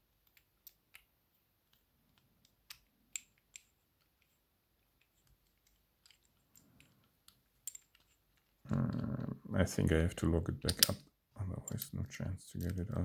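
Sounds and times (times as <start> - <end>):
metallic clicks of lock picking: 5.0 - 8.2, 10.6 - 11.0.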